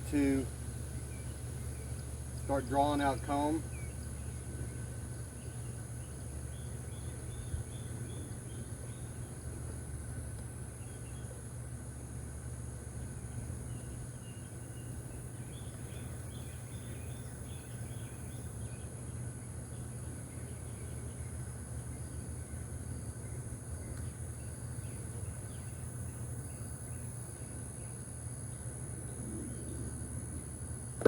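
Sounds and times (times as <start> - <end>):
high insect drone: 19.5 - 31.0.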